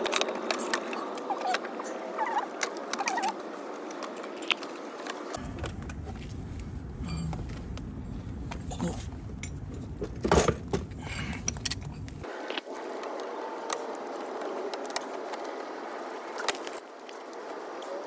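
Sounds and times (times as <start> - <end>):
low rumble: 5.4 - 10.2.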